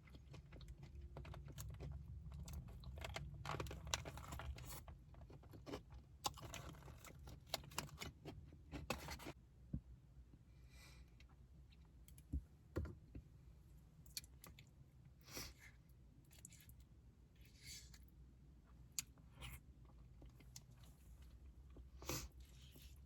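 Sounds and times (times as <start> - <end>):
crunching and chewing: 0.0 - 9.4, 14.0 - 23.0.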